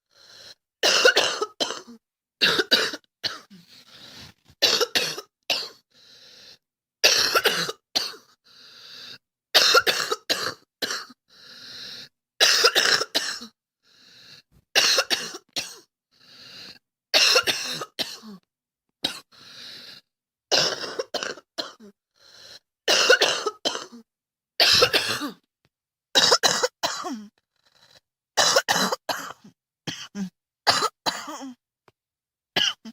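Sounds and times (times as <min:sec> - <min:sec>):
girl coughing: 0:00.8 - 0:03.5, 0:04.6 - 0:05.8, 0:07.0 - 0:08.2, 0:09.6 - 0:11.1, 0:17.2 - 0:18.4, 0:22.9 - 0:24.0, 0:24.6 - 0:25.4, 0:26.2 - 0:27.3, 0:28.4 - 0:31.6.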